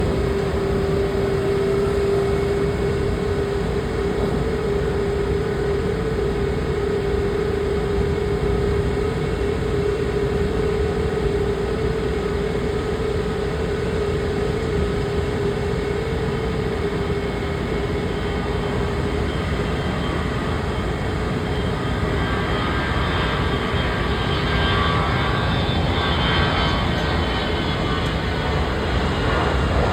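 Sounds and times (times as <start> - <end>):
steady hum: 0.0 - 23.4
high engine whine: 0.0 - 29.9
jet engines rumbling: 0.0 - 29.9.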